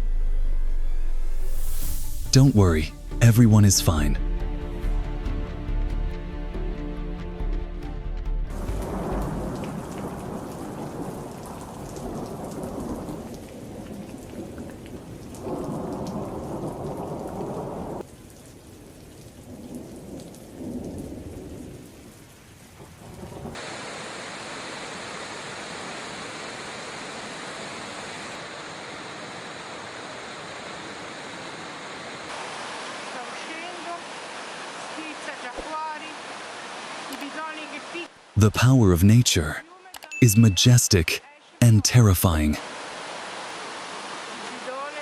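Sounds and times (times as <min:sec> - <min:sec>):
steady water hiss: 0:23.5 - 0:38.4, 0:42.6 - 0:45.0.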